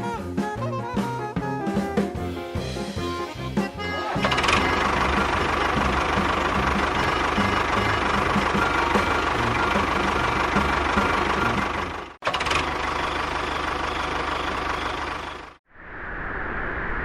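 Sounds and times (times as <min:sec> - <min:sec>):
vehicle engine rumbling: 0:04.1 - 0:15.6.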